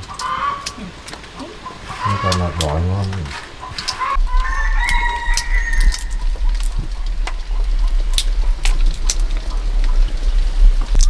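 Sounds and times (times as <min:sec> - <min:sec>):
chicken call: 0:00.0 - 0:06.2
wind buffeting microphone: 0:00.0 - 0:11.0.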